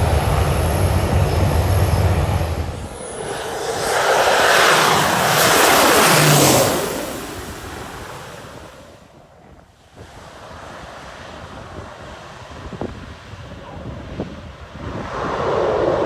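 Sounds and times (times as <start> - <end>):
propeller aircraft passing: 0.0 - 9.0, 14.9 - 16.0.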